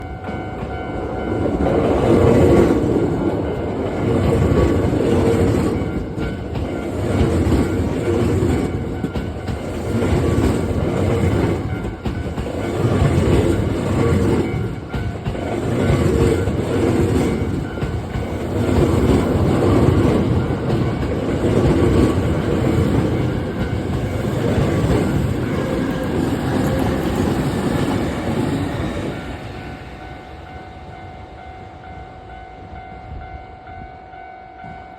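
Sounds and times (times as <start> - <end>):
train wheels clattering over rails: 0.3 - 30.5.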